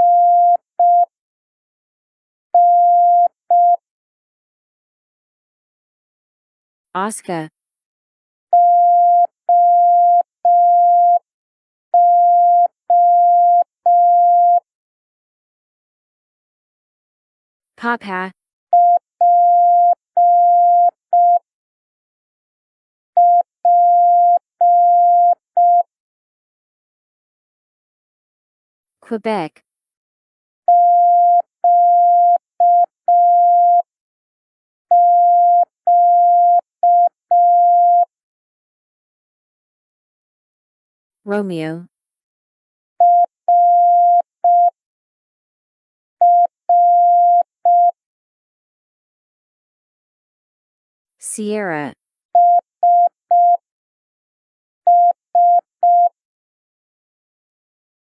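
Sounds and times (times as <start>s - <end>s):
morse code beeps: 0.0s - 1.1s, 2.6s - 3.8s, 34.9s - 38.1s, 43.0s - 44.7s, 46.2s - 48.0s, 52.4s - 53.6s, 54.9s - 56.1s.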